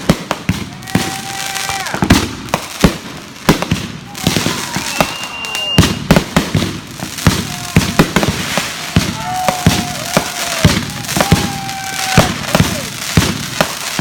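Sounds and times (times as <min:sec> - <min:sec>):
fireworks bangs and crackles: 0:00.0 - 0:14.0
fireworks whistling: 0:00.0 - 0:14.0.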